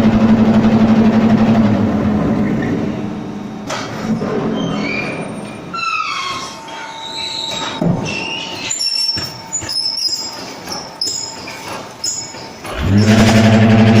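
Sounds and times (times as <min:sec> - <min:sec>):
machinery whine: 0:00.0 - 0:14.0
high metallic squeals: 0:04.4 - 0:13.3.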